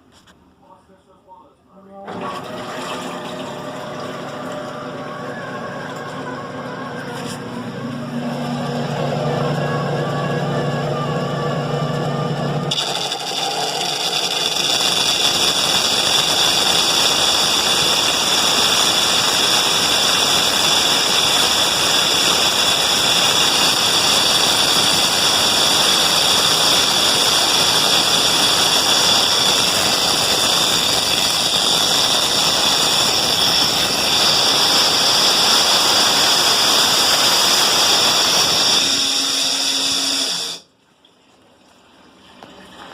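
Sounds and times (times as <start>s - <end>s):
washing machine spinning with whine: 2.0s - 42.9s.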